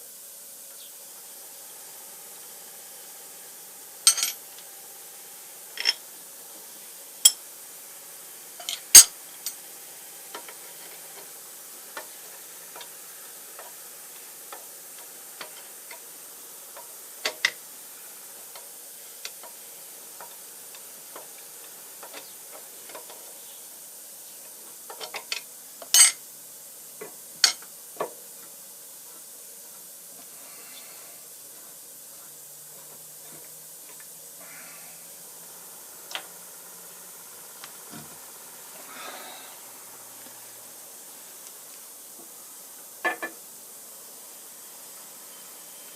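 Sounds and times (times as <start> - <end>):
faint steady hiss: 0.0 - 45.9
metal tools clinking: 4.1 - 4.4.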